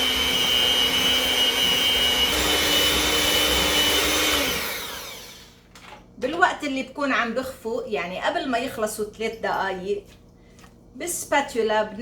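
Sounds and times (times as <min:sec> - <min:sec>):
electric hand mixer running: 0:00.0 - 0:05.6.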